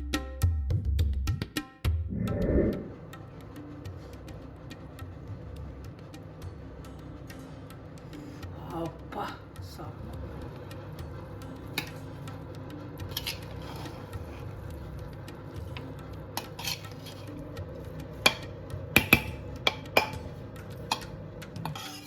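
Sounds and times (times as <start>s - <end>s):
steady low hum: 2.1s - 3.9s
metal spoon scraping cooking pot: 13.0s - 14.8s, 15.7s - 17.6s, 18.2s - 22.0s.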